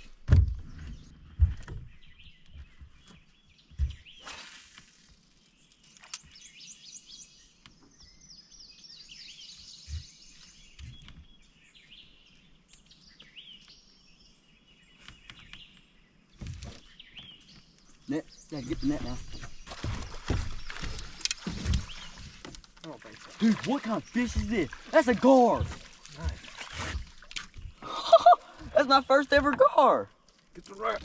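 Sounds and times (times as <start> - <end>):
songbirds chirping and singing: 0.3 - 4.4, 5.4 - 31.0.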